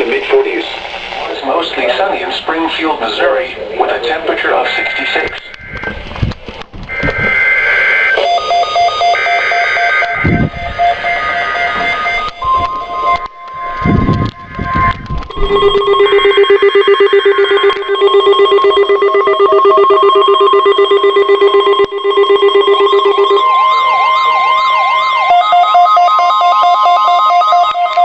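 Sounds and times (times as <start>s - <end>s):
low rumbling noise: 0.0s - 8.1s, 9.3s - 24.1s
steady high tone: 3.2s - 28.0s
rapidly pulsing lower tone: 3.6s - 25.7s
siren-like wail: 4.4s - 28.0s.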